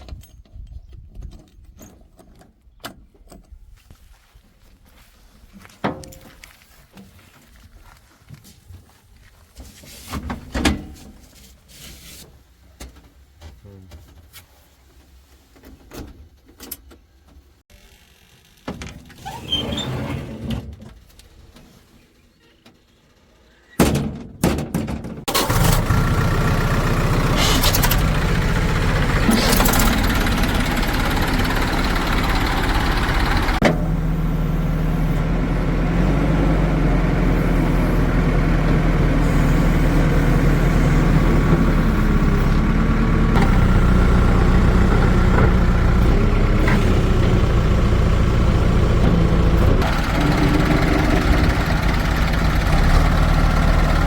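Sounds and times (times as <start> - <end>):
diesel engine starting and running: 25.2 - 54.0.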